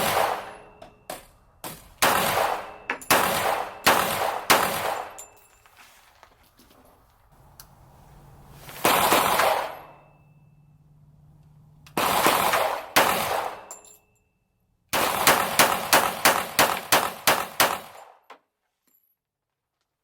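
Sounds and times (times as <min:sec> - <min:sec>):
pistol shots: 0:00.0 - 0:00.8, 0:02.0 - 0:05.2, 0:08.8 - 0:10.0, 0:11.9 - 0:13.8, 0:14.9 - 0:18.2.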